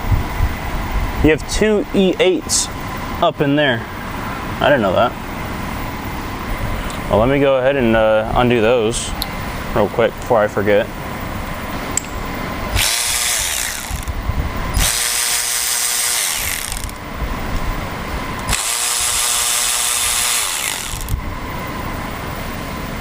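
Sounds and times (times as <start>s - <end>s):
power driver motor whine: 12.7s - 22.2s.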